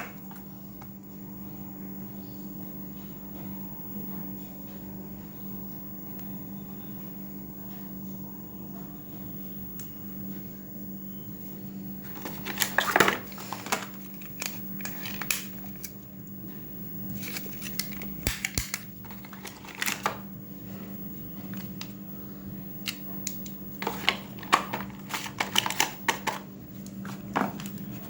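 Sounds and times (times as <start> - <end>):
steady low hum: 0.0 - 28.0
plastic and cardboard crinkling: 12.0 - 16.0, 17.1 - 20.2, 22.8 - 28.0.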